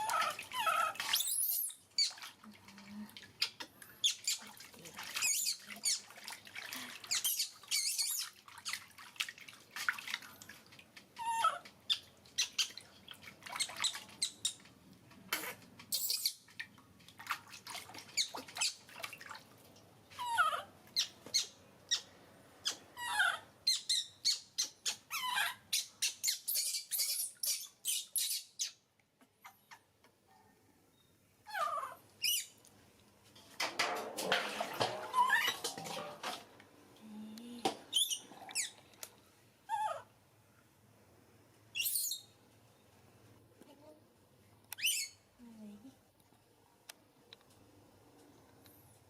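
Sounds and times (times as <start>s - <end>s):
baby monkey squeaking: 0.0s - 2.2s, 5.2s - 6.0s, 7.1s - 8.3s, 15.4s - 16.4s, 20.2s - 28.8s, 31.5s - 32.6s, 37.9s - 38.8s, 41.8s - 42.3s, 44.8s - 45.2s.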